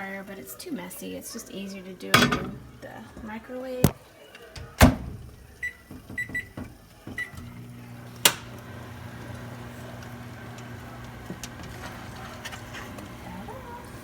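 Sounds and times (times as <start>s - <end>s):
microwave oven humming: 0.0s - 14.0s
microwave click: 8.2s - 8.6s.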